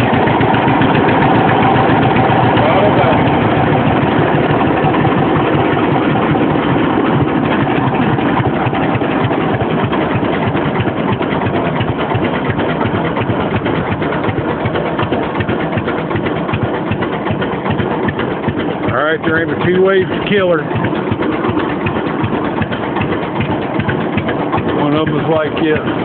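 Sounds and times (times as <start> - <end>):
tractor engine idling: 0.0 - 26.0.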